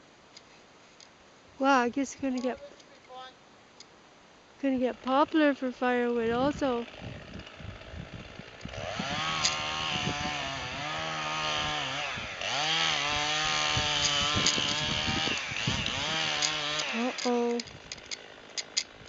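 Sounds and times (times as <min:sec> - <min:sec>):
chainsaw cutting wood: 0:05.0 - 0:19.0.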